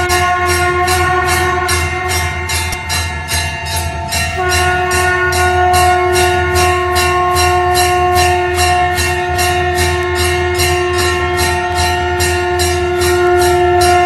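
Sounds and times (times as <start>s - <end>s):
conch shell blown: 0.0s - 3.1s, 4.2s - 14.0s.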